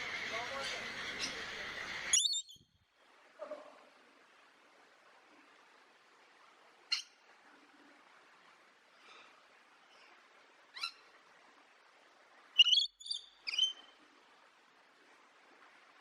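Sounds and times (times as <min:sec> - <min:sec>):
faint steady hiss: 0:00.0 - 0:16.0
bird giving high calls: 0:02.1 - 0:02.6, 0:12.6 - 0:13.8.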